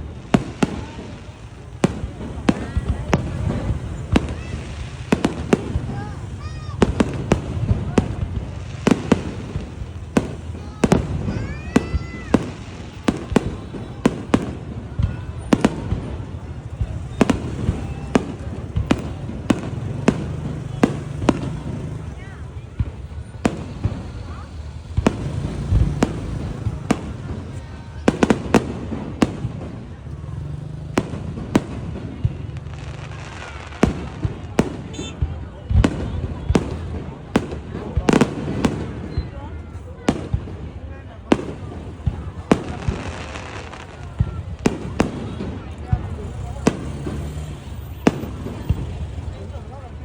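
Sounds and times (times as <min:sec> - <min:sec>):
fireworks bangs: 0:00.0 - 0:50.0.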